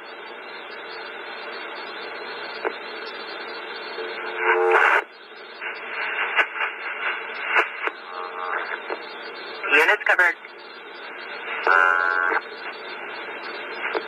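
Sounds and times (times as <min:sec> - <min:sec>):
radio static hissing: 0:00.0 - 0:14.0
radio crackle and clicks: 0:00.3 - 0:14.0
short radio tone: 0:07.5 - 0:08.9, 0:11.5 - 0:12.4.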